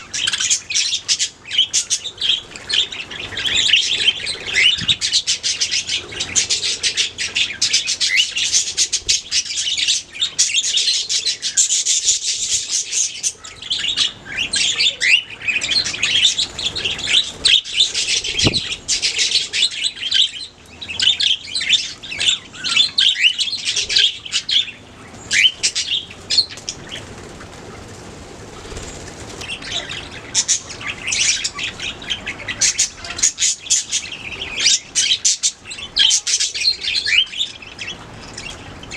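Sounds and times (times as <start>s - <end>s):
budgerigars chirping and warbling: 0.0s - 38.9s.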